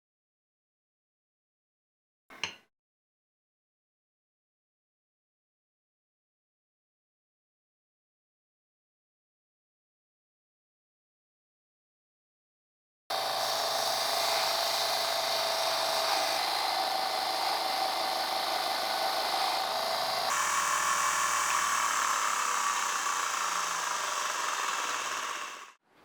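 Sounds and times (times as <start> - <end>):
power tool motor whine: 13.1 - 25.8.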